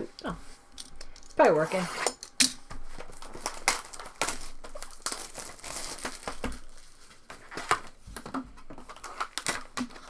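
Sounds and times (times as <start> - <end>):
foil wrappers crinkling: 2.7 - 10.0.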